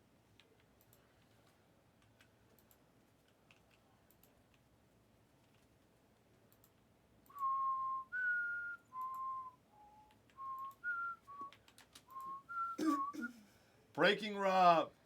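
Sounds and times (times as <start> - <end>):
person whistling a tune: 7.3 - 13.4.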